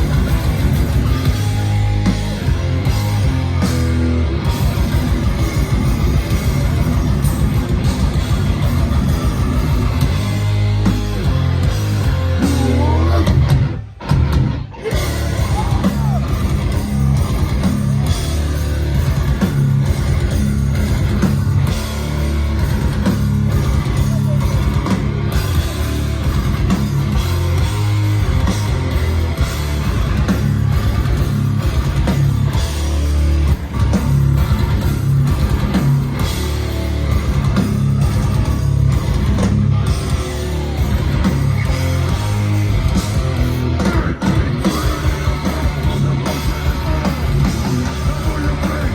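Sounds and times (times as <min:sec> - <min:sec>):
heavy band playing live: 0:00.0 - 0:48.9
vocals: 0:09.0 - 0:13.7, 0:14.7 - 0:18.4, 0:41.5 - 0:48.9.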